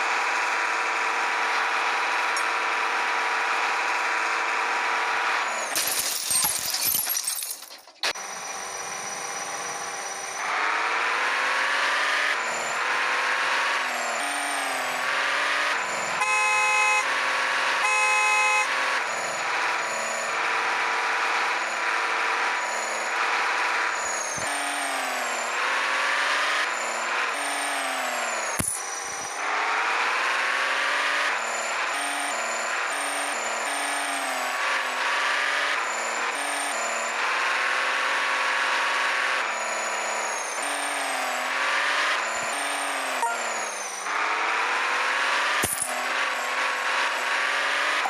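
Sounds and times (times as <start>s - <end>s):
toy engine revving whines: 0.1s - 7.4s, 8.1s - 48.0s
toy horn honks: 16.2s - 17.1s, 17.8s - 18.8s, 43.2s - 43.7s.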